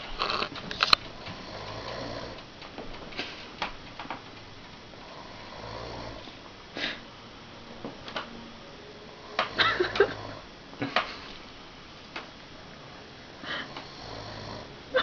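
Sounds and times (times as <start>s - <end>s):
snoring: 0.2s - 0.5s, 1.2s - 2.4s, 5.0s - 7.0s, 9.2s - 10.5s, 13.4s - 15.0s.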